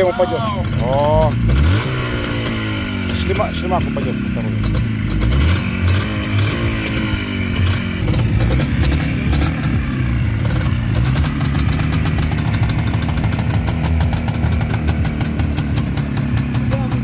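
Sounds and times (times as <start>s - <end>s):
motorcycle engine idling: 0.0s - 17.0s
fast dry ticking: 4.6s - 17.0s.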